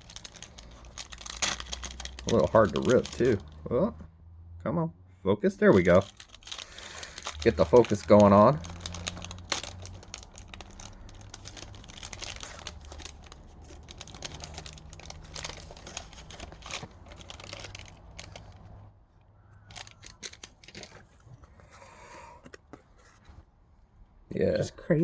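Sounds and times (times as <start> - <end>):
cards being handled: 0.0 - 3.6, 5.7 - 18.8, 19.6 - 23.5
wrapper crinkling and tearing: 0.0 - 3.7, 5.6 - 18.8, 19.6 - 21.2.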